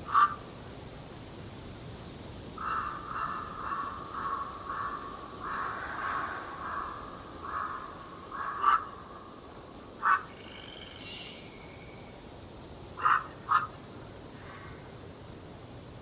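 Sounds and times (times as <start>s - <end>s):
faint forest hiss: 0.0s - 16.0s
bird harsh calls: 2.6s - 9.1s, 10.0s - 11.5s, 13.0s - 13.8s.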